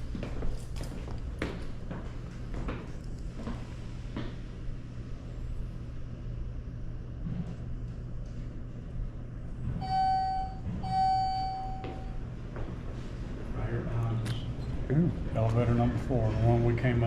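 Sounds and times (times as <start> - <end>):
low building hum: 0.0 - 17.0
elevator arrival chime beeps: 9.8 - 12.2.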